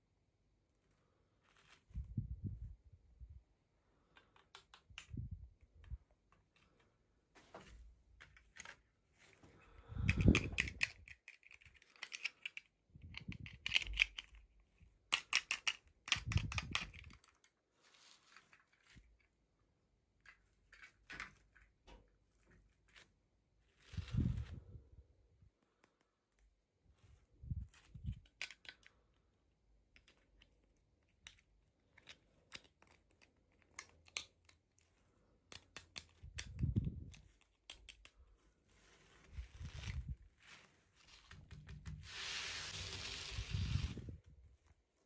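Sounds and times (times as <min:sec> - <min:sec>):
small clicks and taps: 0:04.1 - 0:06.9, 0:29.9 - 0:38.2.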